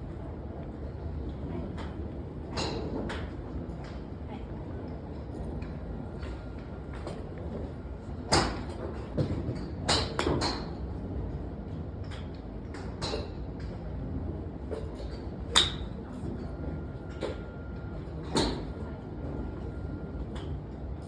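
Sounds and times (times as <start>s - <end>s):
golf clubs striking balls: 14.8s - 16.0s.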